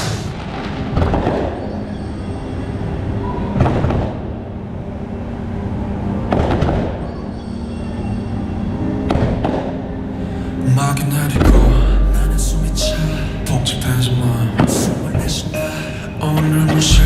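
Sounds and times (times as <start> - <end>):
music: 0.0 - 17.0
low rumble: 11.3 - 14.6.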